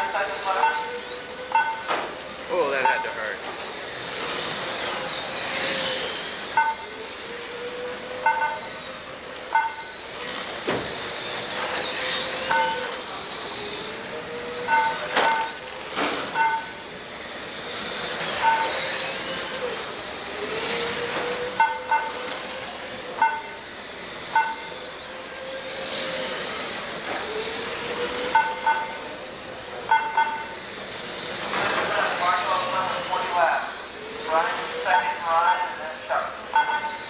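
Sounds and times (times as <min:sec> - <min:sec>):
rc car motors whining: 0:00.0 - 0:37.0
short electronic beeps: 0:01.5 - 0:01.9, 0:06.6 - 0:06.9, 0:08.2 - 0:08.7, 0:09.5 - 0:10.0, 0:16.4 - 0:16.8, 0:18.4 - 0:18.8, 0:23.2 - 0:23.6, 0:24.4 - 0:24.8, 0:29.9 - 0:30.6, 0:36.5 - 0:37.0.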